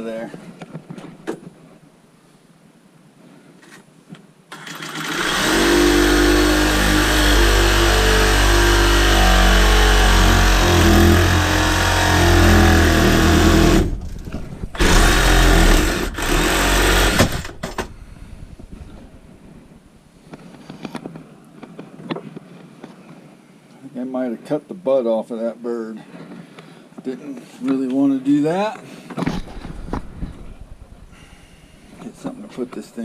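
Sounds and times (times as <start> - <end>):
power saw cutting metal pipe: 4.6 - 17.7.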